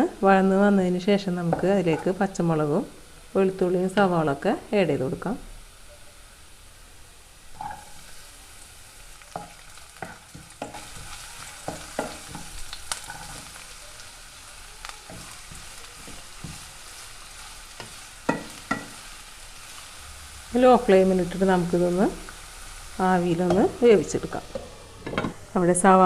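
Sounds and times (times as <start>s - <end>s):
vegetables sizzling in oil: 0.0s - 26.0s
spatula scraping and knocking pan: 9.4s - 13.6s, 15.0s - 17.0s, 17.8s - 19.0s, 24.5s - 25.4s.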